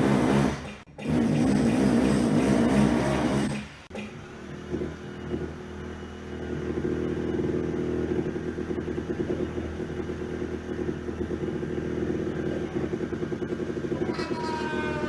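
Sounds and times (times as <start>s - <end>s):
machine motor rattling: 0.0s - 4.2s.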